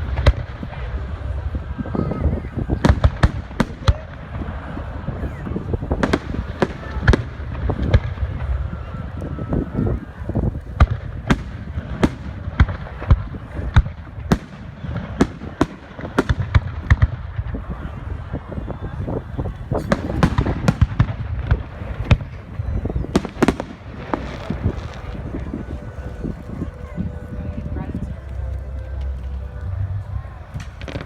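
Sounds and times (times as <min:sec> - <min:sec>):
low rumble: 0:00.0 - 0:31.0
fireworks bangs and pops: 0:02.4 - 0:08.6, 0:09.5 - 0:26.8, 0:30.5 - 0:31.0.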